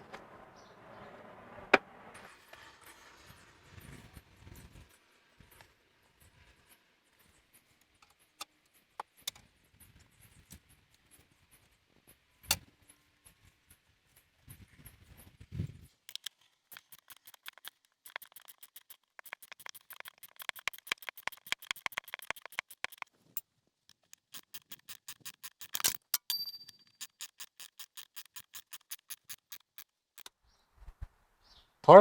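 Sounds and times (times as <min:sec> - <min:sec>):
socket ratchet clicking: 0:16.1 - 0:23.1, 0:23.9 - 0:30.3.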